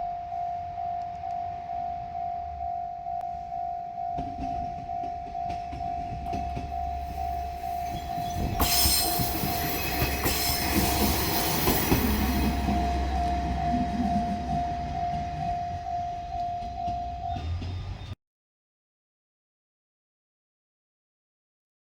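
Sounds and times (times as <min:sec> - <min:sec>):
level-crossing warning bell: 0:00.0 - 0:18.2
diesel railcar passing: 0:00.2 - 0:18.2
rattling wheel and rail noise: 0:04.0 - 0:18.2.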